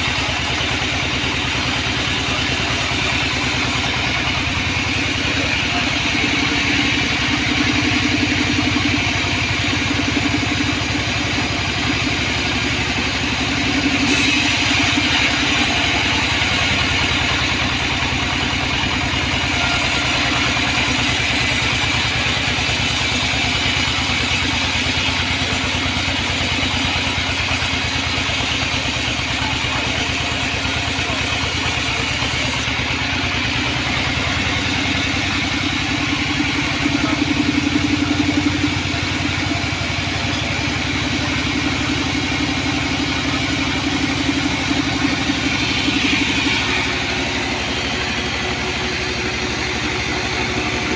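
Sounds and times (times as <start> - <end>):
band saw cutting log: 0.0 - 9.5, 12.3 - 35.8, 43.4 - 50.9.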